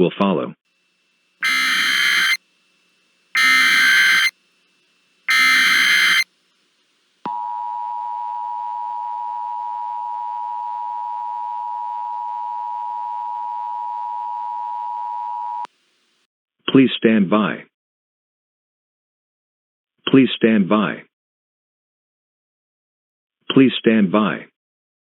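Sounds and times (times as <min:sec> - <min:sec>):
two-tone attention signal: 0:01.4 - 0:02.4, 0:03.4 - 0:04.3, 0:05.3 - 0:06.2
buzzing data bursts: 0:01.4 - 0:04.4, 0:05.2 - 0:06.3.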